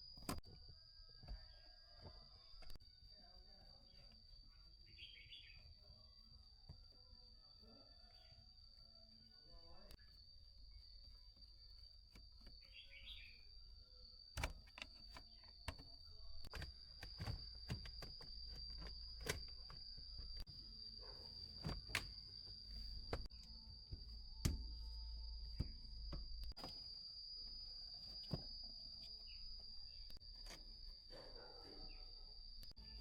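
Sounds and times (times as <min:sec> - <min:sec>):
handling clicks and knocks: 0:14.4 - 0:20.4.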